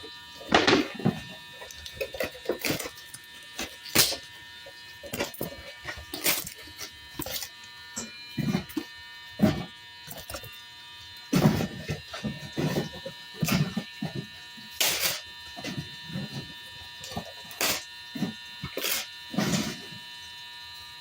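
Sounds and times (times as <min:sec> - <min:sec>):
cardboard thumps and crunches: 0:00.5 - 0:04.2, 0:08.4 - 0:08.8, 0:09.4 - 0:10.5, 0:11.3 - 0:20.0.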